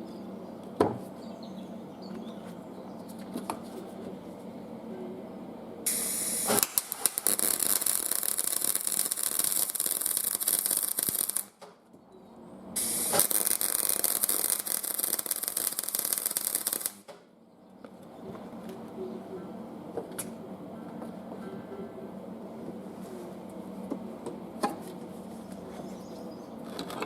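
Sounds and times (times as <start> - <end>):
arc welding crackling hiss: 5.9 - 11.7, 12.8 - 17.1.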